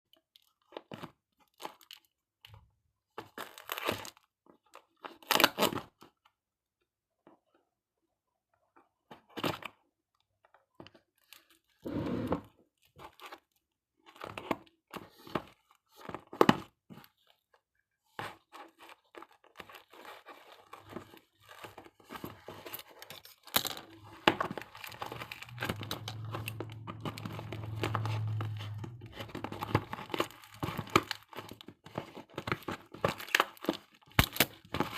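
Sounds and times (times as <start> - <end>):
packaging crinkling: 19.2 - 34.9
low hum: 24.0 - 31.2.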